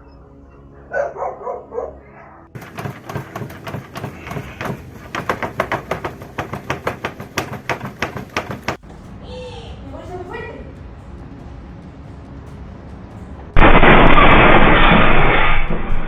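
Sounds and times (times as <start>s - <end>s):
dog barking: 0.8s - 2.5s
rapid clatter of sharp knocks: 2.6s - 8.9s.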